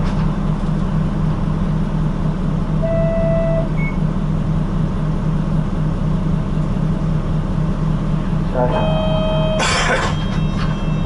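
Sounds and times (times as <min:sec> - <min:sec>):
bus engine droning: 0:00.0 - 0:11.0
electronic beep: 0:08.7 - 0:11.0.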